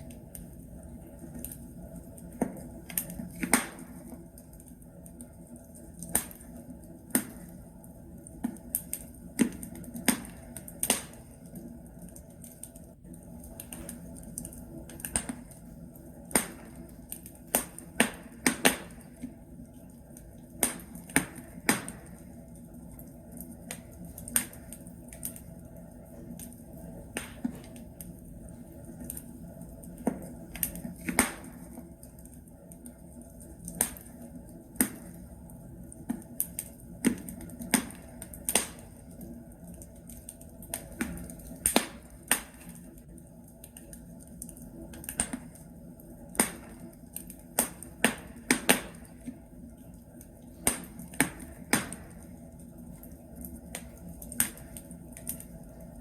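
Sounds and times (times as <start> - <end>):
logs crackling in fireplace: 0.0 - 56.0.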